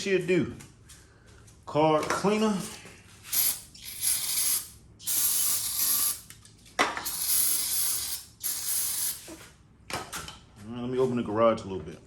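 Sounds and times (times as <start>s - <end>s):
aerosol can spraying: 3.3s - 6.3s, 7.0s - 9.4s.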